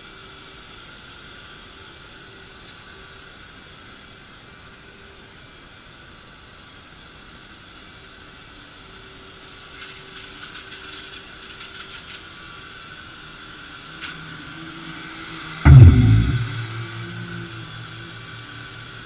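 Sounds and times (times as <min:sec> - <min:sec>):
loud thump: 0:15.7 - 0:17.1.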